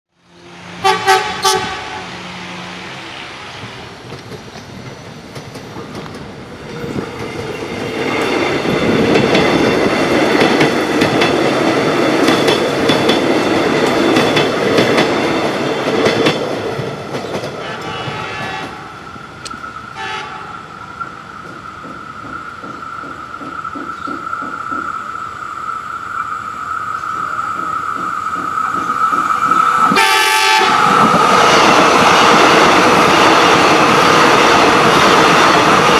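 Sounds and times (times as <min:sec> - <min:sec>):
train horn blasts: 0:00.8 - 0:02.6, 0:17.6 - 0:19.0, 0:19.9 - 0:20.7, 0:29.9 - 0:30.9
train wheels clattering: 0:03.6 - 0:19.8, 0:20.8 - 0:25.2, 0:27.1 - 0:35.9.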